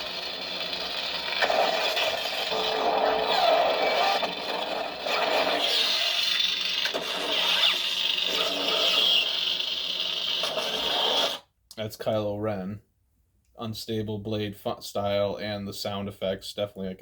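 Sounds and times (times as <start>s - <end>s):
crackling lightsaber hum: 0.0s - 11.4s.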